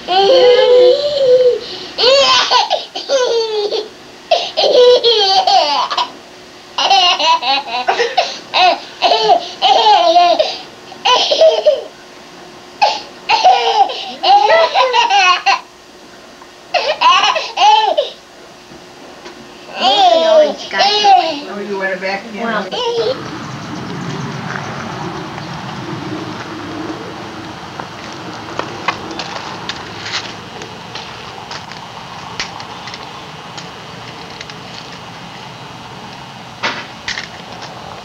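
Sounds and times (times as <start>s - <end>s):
baby laughing: 0.1s - 6.2s, 6.8s - 11.9s, 12.8s - 15.7s, 16.7s - 18.2s, 19.7s - 21.5s, 22.7s - 23.3s.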